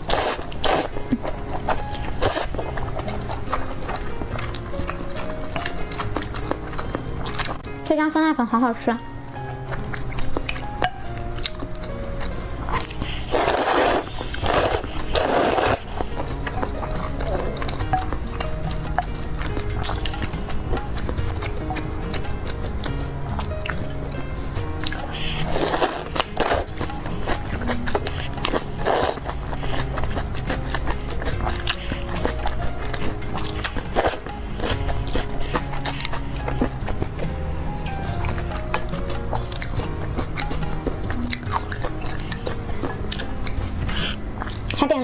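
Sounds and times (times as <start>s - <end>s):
loud noodle slurps: 0.0s - 4.1s, 12.7s - 21.6s, 24.8s - 37.1s, 38.7s - 44.8s
chewing: 0.0s - 7.8s, 9.5s - 45.0s
background music: 0.0s - 45.0s.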